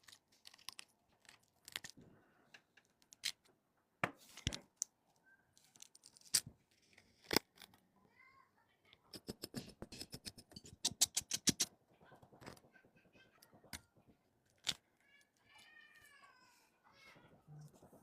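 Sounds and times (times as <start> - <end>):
sharp clicks and taps: 9.1 - 14.8.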